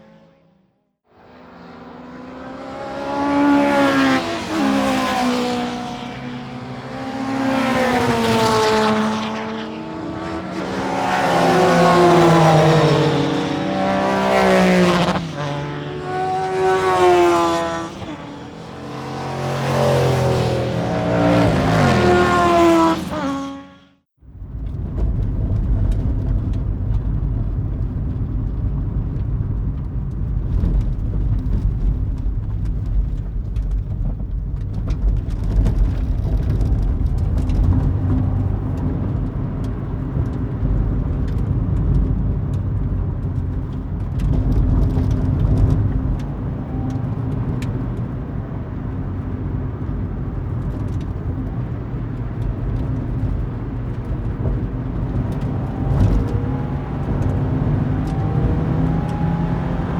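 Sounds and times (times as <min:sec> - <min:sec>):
racing car engines droning: 0:00.0 - 0:59.9.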